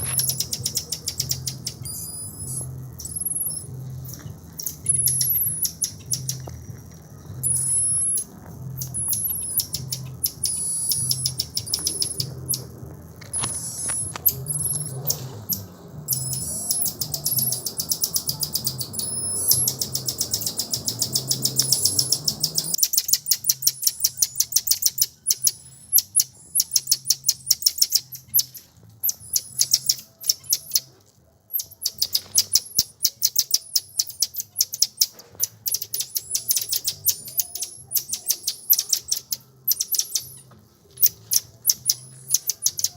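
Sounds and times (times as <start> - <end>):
birds chirping: 0.0 - 6.6, 7.4 - 30.9, 31.5 - 42.9
low steady hum: 0.0 - 22.8.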